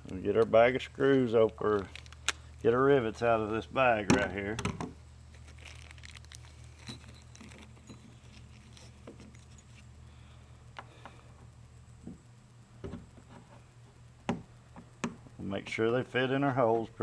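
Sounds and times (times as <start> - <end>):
steady low hum: 0.0 - 17.0
small bag rustling: 1.6 - 2.6, 5.3 - 9.9
metal rivets clinking: 5.5 - 9.8.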